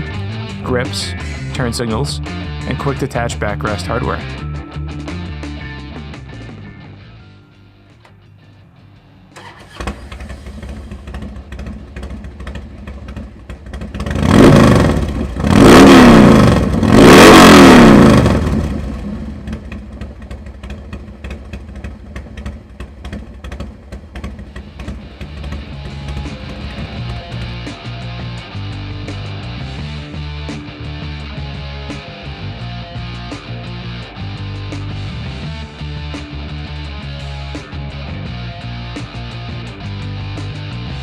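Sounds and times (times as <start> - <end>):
motorcycle engine starting and idling: 7.9 - 32.0
motorcycle engine revving: 9.3 - 41.0.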